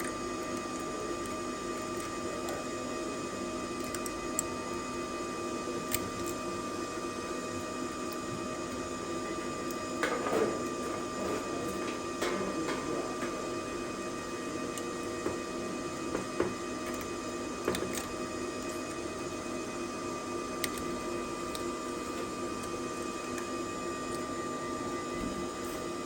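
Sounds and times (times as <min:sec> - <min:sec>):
steady machine hum: 0:00.0 - 0:26.0.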